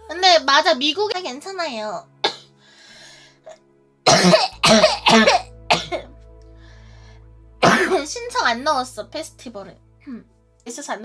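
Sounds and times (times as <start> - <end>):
faint breath in: 2.6 - 3.5, 6.4 - 7.6
woman coughing: 4.1 - 6.1, 7.6 - 8.1.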